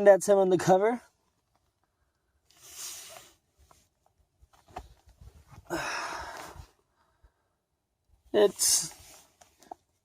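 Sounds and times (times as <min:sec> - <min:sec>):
person breathing: 0:05.6 - 0:07.7.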